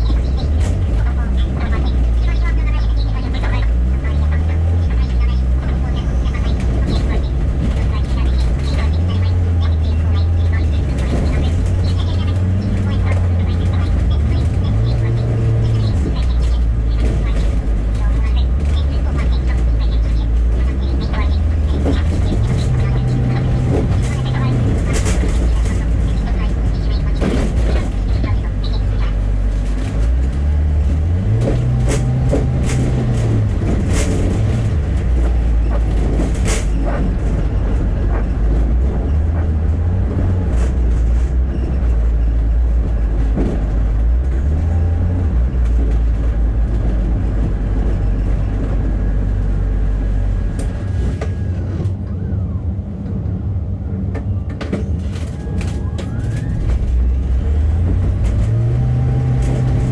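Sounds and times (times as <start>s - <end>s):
bus engine accelerating: 0.0s - 59.9s
bodywork rattles and knocks: 3.1s - 51.9s, 54.1s - 59.9s.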